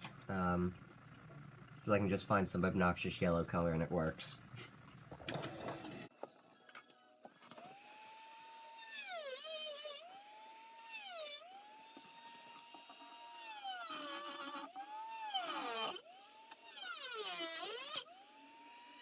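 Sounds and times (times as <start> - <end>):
rotary tool whining: 5.2 - 19.0.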